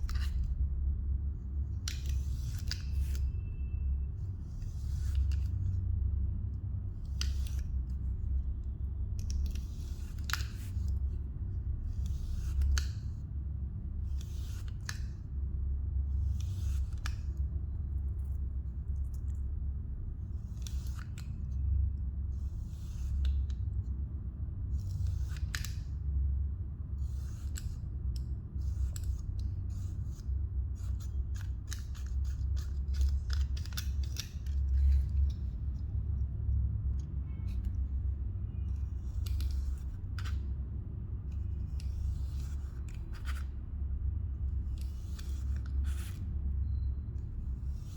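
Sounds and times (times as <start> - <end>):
steady low hum: 0.0 - 47.9.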